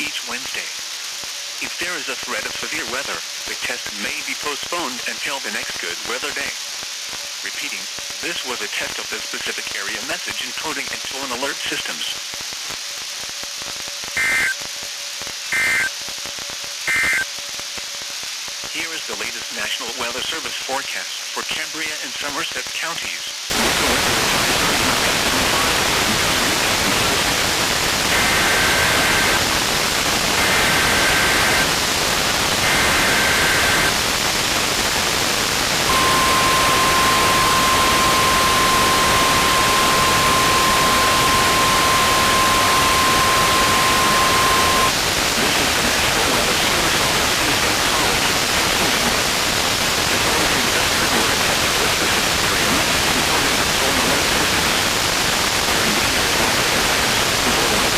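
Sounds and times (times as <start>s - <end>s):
radio static: 0.0s - 57.9s
steady warning alarm tone: 14.2s - 14.5s, 15.5s - 15.9s, 16.9s - 17.2s, 35.8s - 45.0s
warbling data bursts: 28.0s - 45.0s.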